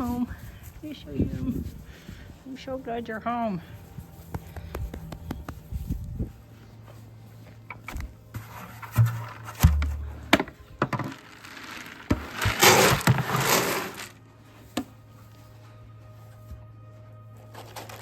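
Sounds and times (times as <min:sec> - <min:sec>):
wooden knocks and thumps: 0:08.9 - 0:11.2.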